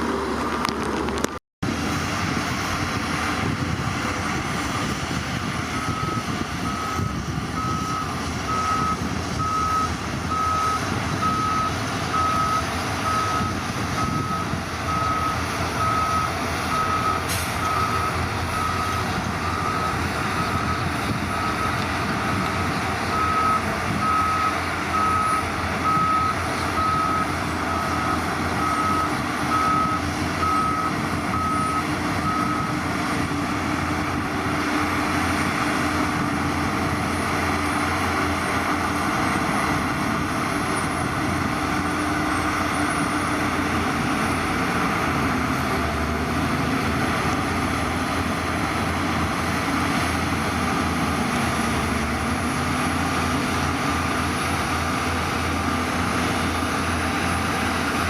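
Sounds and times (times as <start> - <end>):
diesel engine running: 0.0 - 58.0
reversing alarm beeping: 5.6 - 22.4, 23.0 - 33.3.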